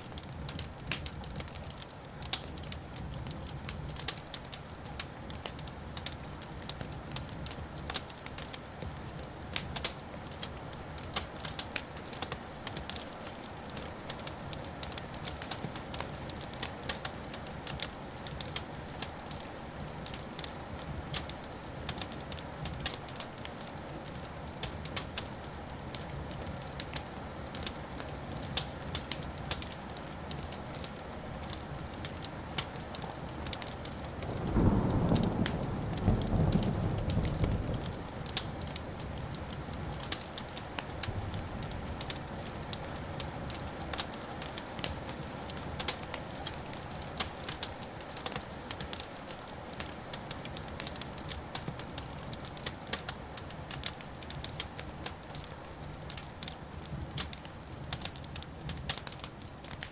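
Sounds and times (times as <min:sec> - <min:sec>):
wood fire crackling and popping: 0:00.0 - 0:59.9
thunder rumbling: 0:34.3 - 0:39.0.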